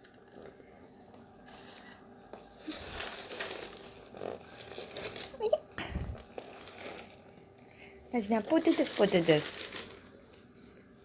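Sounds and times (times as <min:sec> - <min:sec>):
starch powder squeaking and crunching: 0:02.5 - 0:07.3, 0:08.3 - 0:09.9.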